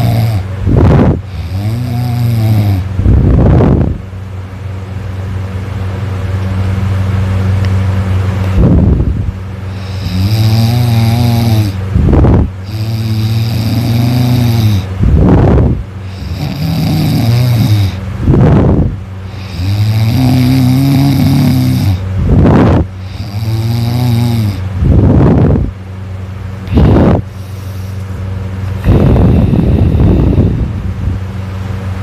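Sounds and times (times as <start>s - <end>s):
person snoring loudly: 0.0s - 3.6s, 9.7s - 25.6s, 26.6s - 28.0s, 28.8s - 30.8s
rough rushes of breath: 28.8s - 30.8s.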